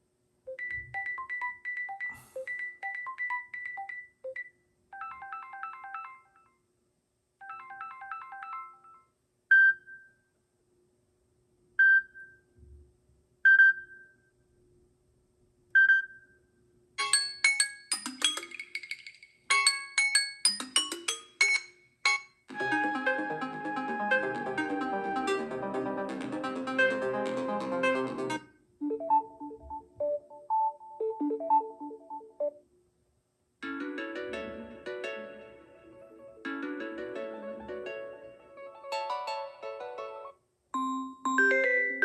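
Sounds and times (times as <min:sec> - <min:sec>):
phone ringtones: 0:00.5 - 0:06.5, 0:07.4 - 0:09.1.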